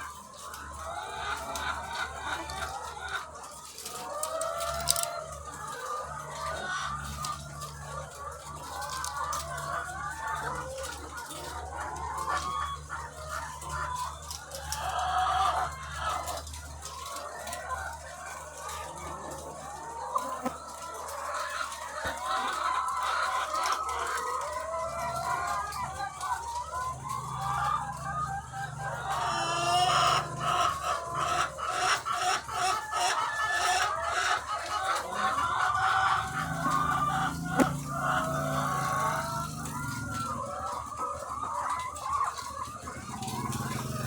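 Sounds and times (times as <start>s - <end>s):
hens clucking and squawking: 0.0s - 44.0s.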